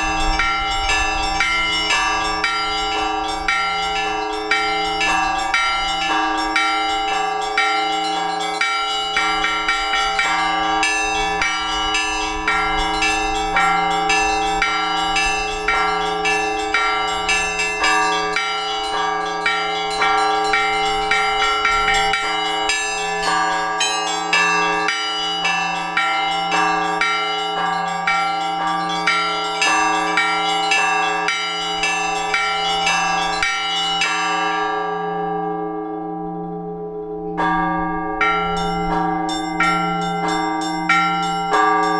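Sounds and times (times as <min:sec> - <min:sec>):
large bells humming: 0:00.0 - 0:41.9
small church bells striking fast: 0:00.0 - 0:41.9.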